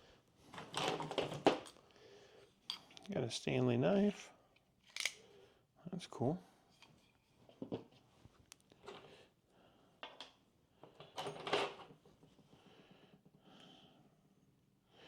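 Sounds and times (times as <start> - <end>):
small tools clicking and clinking: 4.8 - 5.2.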